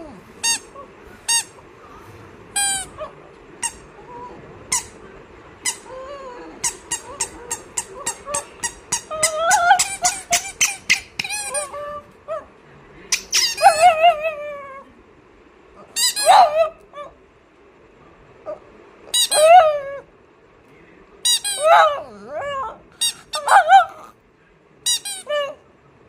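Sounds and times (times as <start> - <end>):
dog whining: 5.6 - 12.5, 13.1 - 14.9, 15.8 - 17.2, 18.5 - 20.1, 21.3 - 24.2, 24.9 - 25.6.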